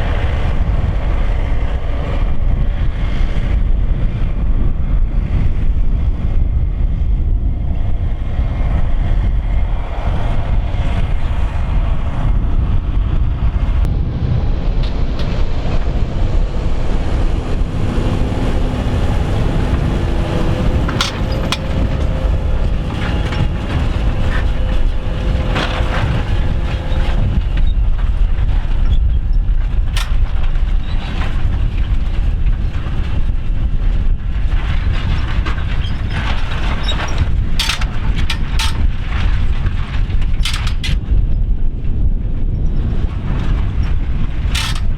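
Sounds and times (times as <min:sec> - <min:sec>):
tractor engine rumbling: 0:00.0 - 0:44.9
sharp clicks or knocks: 0:20.8 - 0:22.1, 0:40.4 - 0:41.0, 0:44.6 - 0:44.9.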